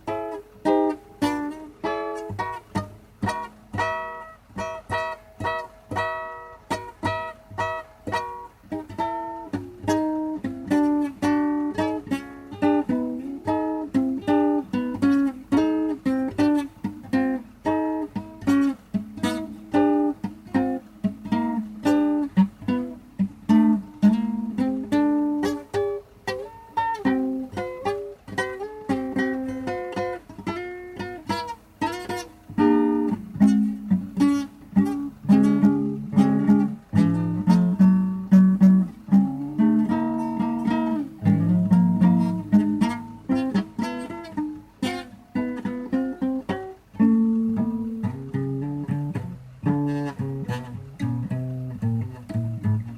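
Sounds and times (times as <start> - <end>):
solo blues guitar: 0.0 - 52.9.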